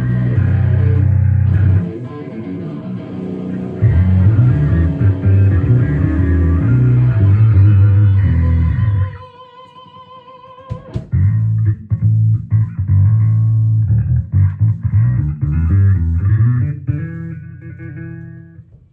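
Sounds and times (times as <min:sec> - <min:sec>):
electric bass notes: 0:00.0 - 0:09.2, 0:10.8 - 0:18.9.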